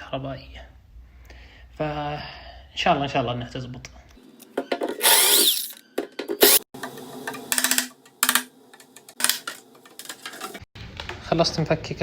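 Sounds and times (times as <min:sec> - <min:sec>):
power drill running: 0:05.0 - 0:05.8, 0:06.4 - 0:06.6.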